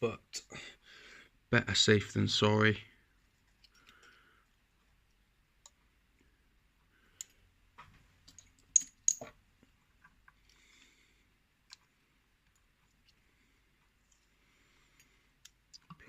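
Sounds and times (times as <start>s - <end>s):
metallic clicks of lock parts: 8.3s - 9.3s.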